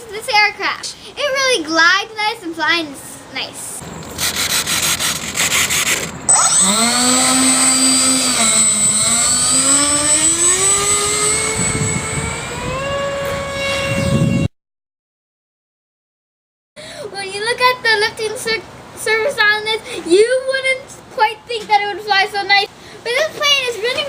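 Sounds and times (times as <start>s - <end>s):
electric ducted fans whining: 1.1s - 14.5s
noisy rubbing sound: 3.9s - 14.5s.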